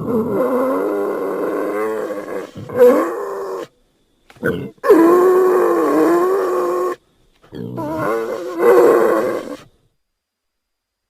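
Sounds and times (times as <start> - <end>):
wild boar calling: 4.4 - 9.7.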